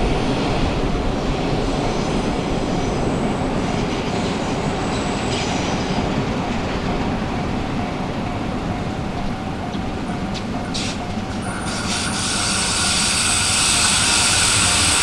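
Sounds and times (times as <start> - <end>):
freight train wheels rumbling: 0.0 - 15.0
high-pitched wheel squeal: 10.6 - 15.0.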